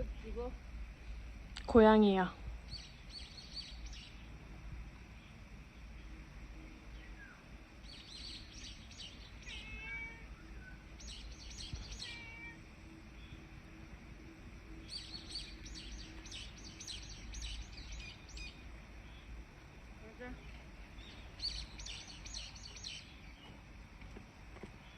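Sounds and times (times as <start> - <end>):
small birds chirping: 0.0 - 24.9
cat meowing: 9.4 - 10.4, 11.9 - 12.6.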